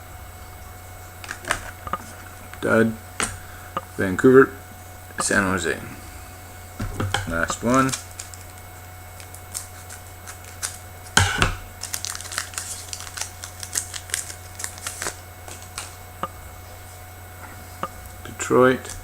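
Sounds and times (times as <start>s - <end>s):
card wrapper crinkling: 1.2s - 2.6s, 5.2s - 16.9s
cards clicking: 5.1s - 16.4s.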